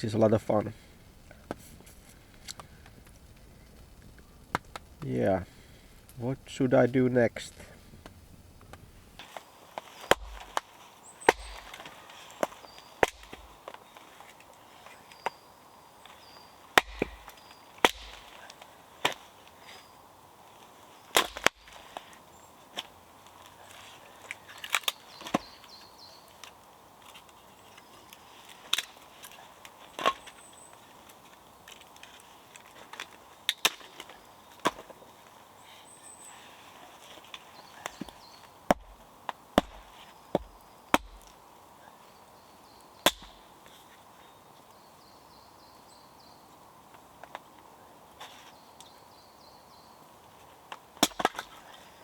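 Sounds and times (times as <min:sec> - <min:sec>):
wood being chopped: 0:09.2 - 0:13.8, 0:16.8 - 0:19.3, 0:21.1 - 0:22.1, 0:24.6 - 0:25.6, 0:32.9 - 0:35.0, 0:37.8 - 0:41.4, 0:43.0 - 0:43.5, 0:50.7 - 0:51.8.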